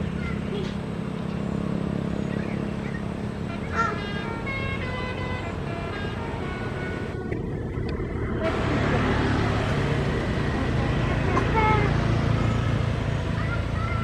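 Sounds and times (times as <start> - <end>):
bus engine running: 0.0 - 14.0
multi-note horn melody: 3.4 - 12.1.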